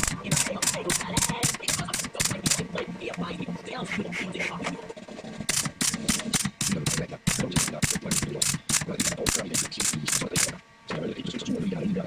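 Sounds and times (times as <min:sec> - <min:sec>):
rapid sharp clicks: 0:00.0 - 0:02.8, 0:05.4 - 0:10.6.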